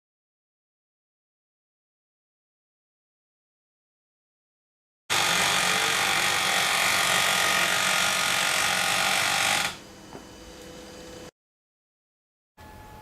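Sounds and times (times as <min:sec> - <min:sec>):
copier grinding loudly: 0:05.1 - 0:09.8
faint hum: 0:12.6 - 0:13.0.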